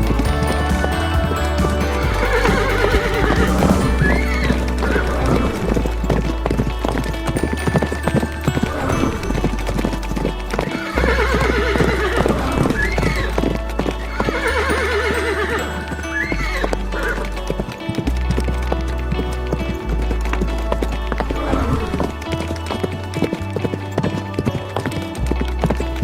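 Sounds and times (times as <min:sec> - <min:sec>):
background music with bass line: 0:00.0 - 0:26.0
horse hoofbeats galloping: 0:00.0 - 0:26.0
horse neighing: 0:10.8 - 0:13.2.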